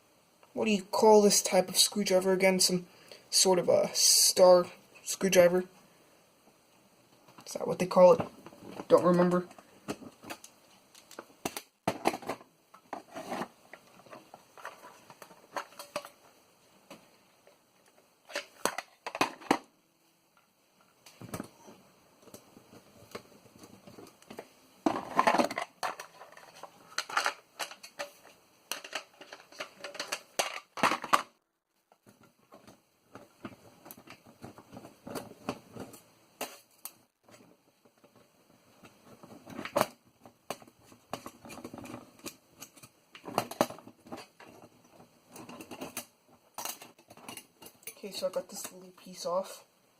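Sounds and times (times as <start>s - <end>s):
small parts clicking and scraping: 23.1s - 38.2s, 38.8s - 48.8s.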